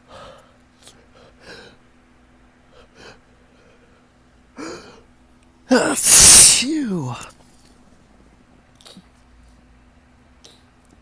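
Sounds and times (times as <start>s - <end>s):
person sniffing: 5.7s - 7.3s
voiced gasp: 5.7s - 7.3s.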